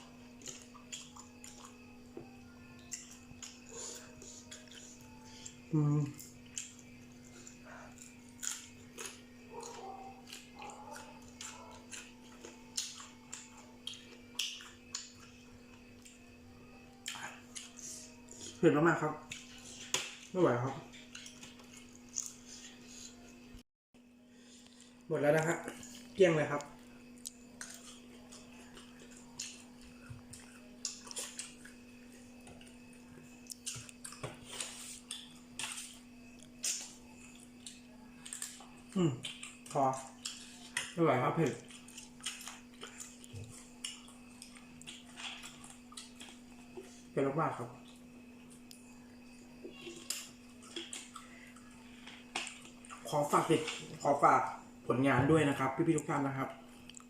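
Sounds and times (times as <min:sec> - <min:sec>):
faint steady hum: 0:00.0 - 0:57.0
chewing smacks: 0:00.3 - 0:01.8, 0:06.2 - 0:15.4, 0:27.2 - 0:32.8, 0:33.4 - 0:41.0, 0:41.6 - 0:46.9, 0:49.7 - 0:53.1, 0:56.8 - 0:57.0.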